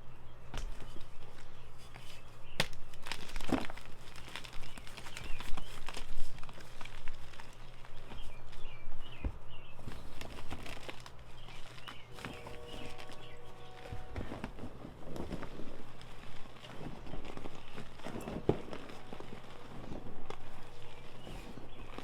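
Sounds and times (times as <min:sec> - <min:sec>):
sharp crack: 0:02.5 - 0:03.6
chalk being crushed: 0:09.9 - 0:22.0.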